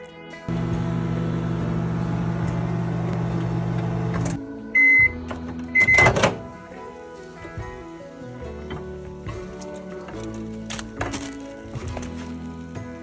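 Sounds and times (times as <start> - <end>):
microwave beep: 0.5 - 6.4
microwave oven humming: 0.5 - 6.6.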